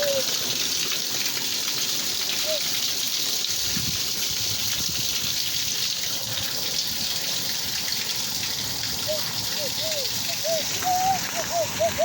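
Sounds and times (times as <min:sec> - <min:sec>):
falling rain: 0:00.0 - 0:12.0
running water: 0:00.0 - 0:12.0.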